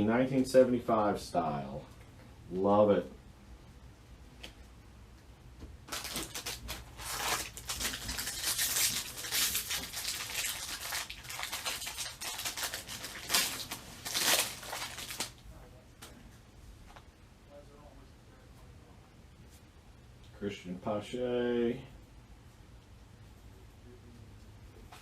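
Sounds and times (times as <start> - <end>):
card packs crinkling: 5.8 - 15.4.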